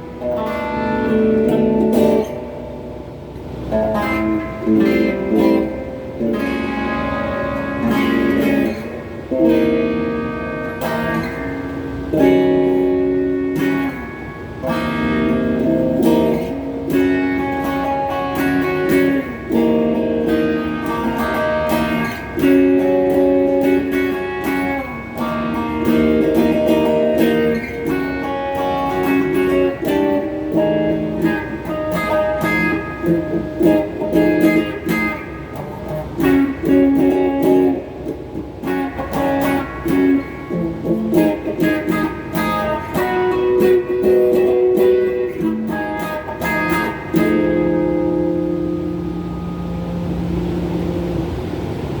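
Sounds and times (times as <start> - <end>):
electric guitar strumming chords: 0.0 - 52.0.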